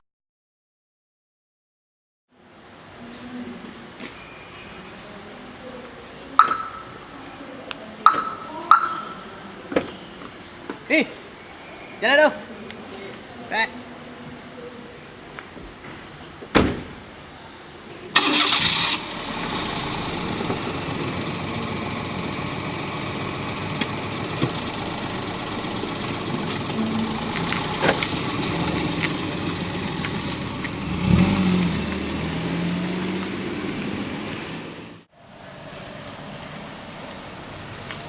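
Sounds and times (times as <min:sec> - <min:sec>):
car engine starting and running: 0:18.1 - 0:35.1.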